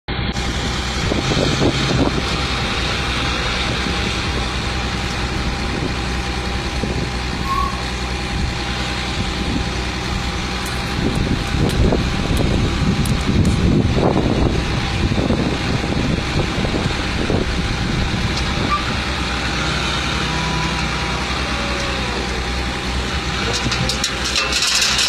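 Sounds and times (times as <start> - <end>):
heavy truck running: 0.1 - 25.0
short high beep: 7.4 - 7.9.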